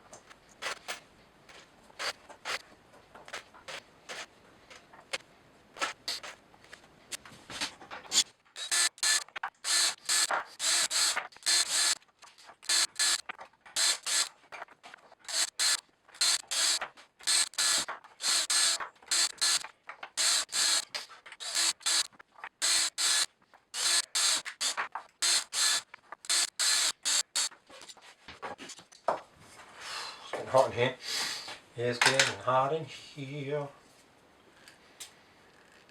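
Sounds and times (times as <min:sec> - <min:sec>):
small power tool whirring: 0:02.0 - 0:02.6, 0:03.3 - 0:04.3, 0:05.8 - 0:06.4, 0:08.1 - 0:12.0, 0:12.6 - 0:14.3, 0:15.2 - 0:27.5.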